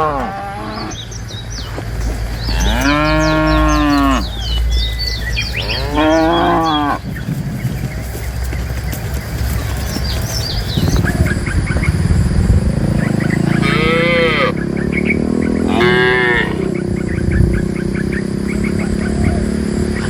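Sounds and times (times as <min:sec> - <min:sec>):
cattle mooing: 0:00.0 - 0:01.1, 0:02.4 - 0:04.6, 0:05.4 - 0:07.0, 0:13.4 - 0:14.6, 0:15.5 - 0:16.7.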